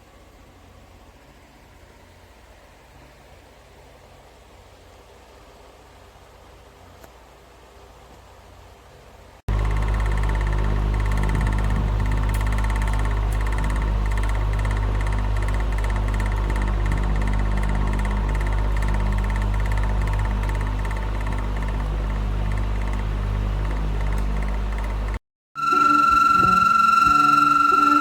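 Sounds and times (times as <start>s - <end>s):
electric fan running: 9.5s - 28.0s.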